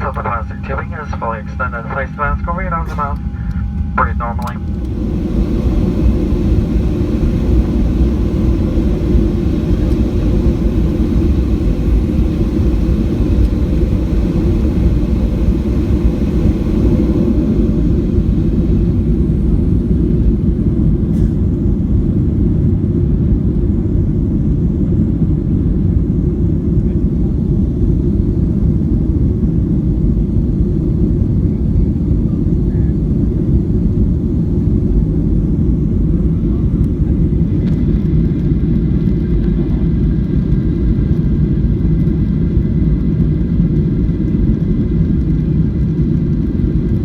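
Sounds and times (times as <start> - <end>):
aircraft engines idling: 0.0 - 47.0.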